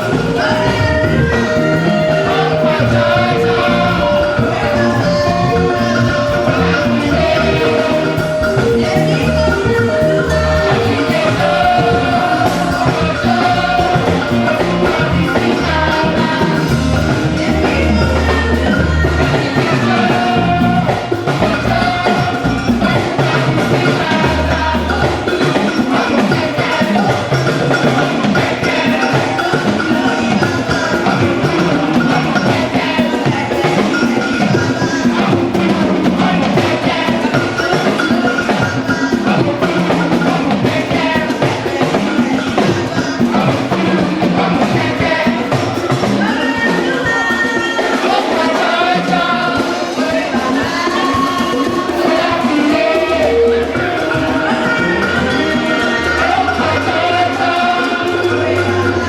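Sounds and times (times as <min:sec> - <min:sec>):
gospel music with drums and bass: 0:00.0 - 0:59.0.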